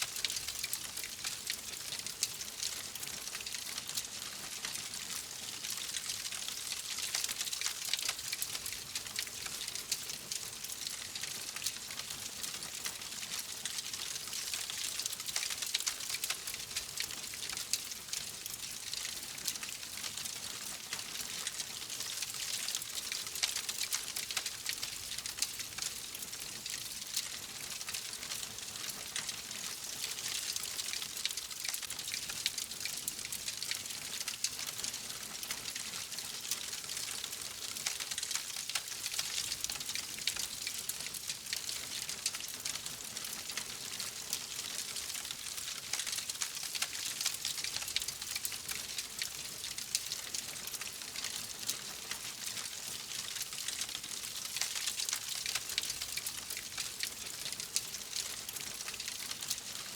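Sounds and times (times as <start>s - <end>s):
wood fire crackling: 30.0s - 59.8s.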